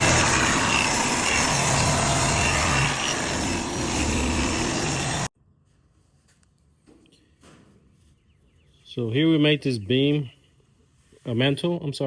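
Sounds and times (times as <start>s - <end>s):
loud motor humming: 0.0s - 5.3s.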